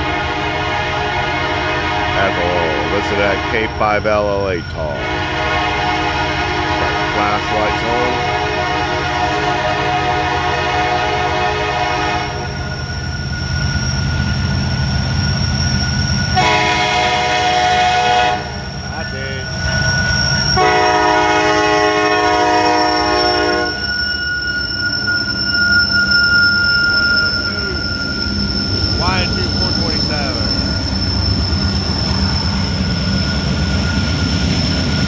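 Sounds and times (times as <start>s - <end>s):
locomotive air horn blasts: 0.0s - 12.6s, 16.4s - 19.1s, 20.5s - 23.9s
low rumble of passing train: 0.0s - 35.0s.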